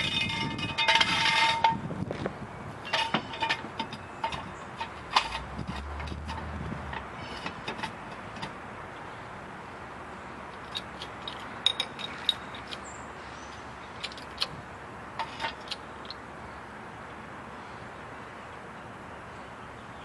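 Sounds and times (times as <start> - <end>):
light metallic clinks and taps: 10.6 - 12.8.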